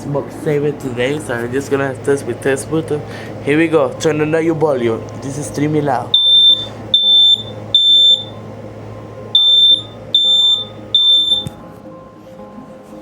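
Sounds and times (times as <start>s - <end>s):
smoke alarm beeping: 6.1s - 8.5s, 9.3s - 11.6s.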